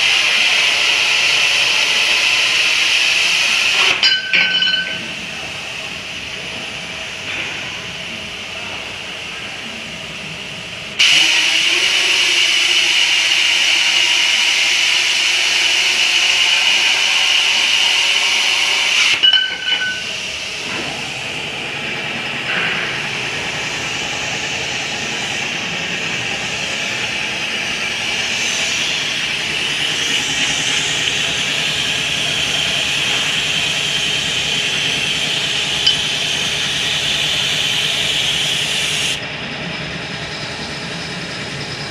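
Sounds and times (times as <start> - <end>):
pipe cutting hiss with high whine: 23.5 - 39.2.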